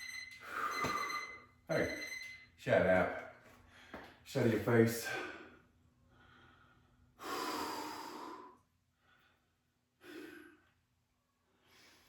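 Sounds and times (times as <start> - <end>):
man breathing hard: 5.0 - 10.8.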